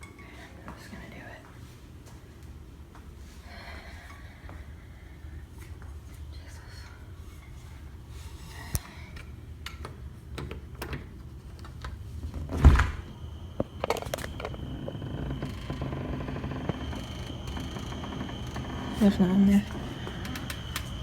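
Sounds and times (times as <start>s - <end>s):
door thud: 12.5s - 13.1s.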